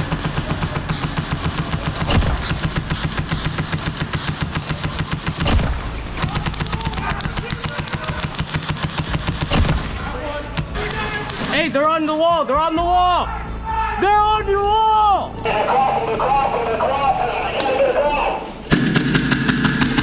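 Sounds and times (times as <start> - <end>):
airsoft rifles firing full-auto: 0.0 - 11.9, 17.6 - 20.0.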